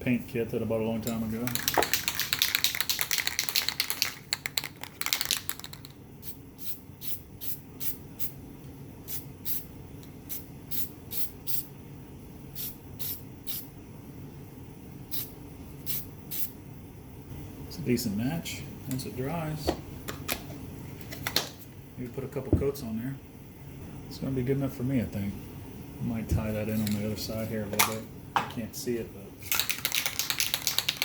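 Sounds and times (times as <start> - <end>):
spray can mixing ball rattling: 1.1 - 7.6, 29.4 - 31.0.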